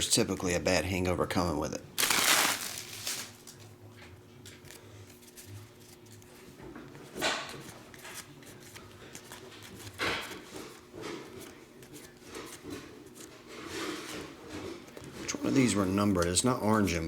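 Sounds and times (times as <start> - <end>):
cards rustling: 2.0 - 3.7, 4.4 - 14.1.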